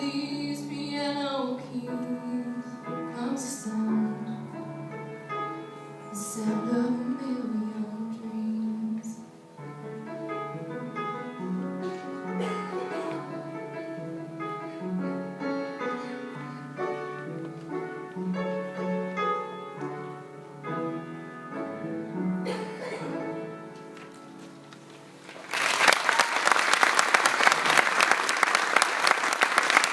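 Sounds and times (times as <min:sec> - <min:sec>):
live song: 0:00.0 - 0:29.9
audience applause: 0:25.2 - 0:29.9.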